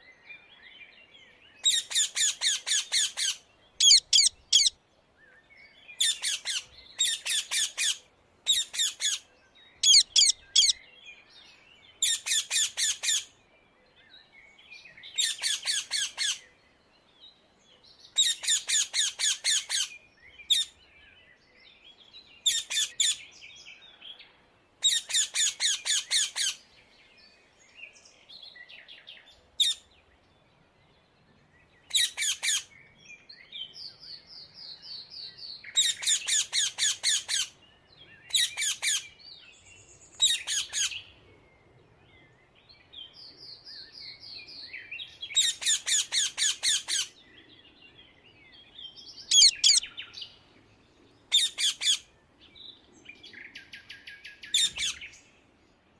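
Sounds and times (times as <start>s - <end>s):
parakeet shrill calls: 1.6s - 4.8s, 6.0s - 9.2s, 9.8s - 10.8s, 31.9s - 32.7s, 49.3s - 49.9s, 51.3s - 52.0s.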